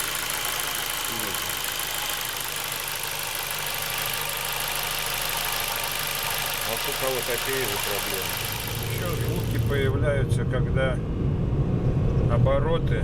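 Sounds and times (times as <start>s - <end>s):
car engine idling: 0.0s - 10.1s.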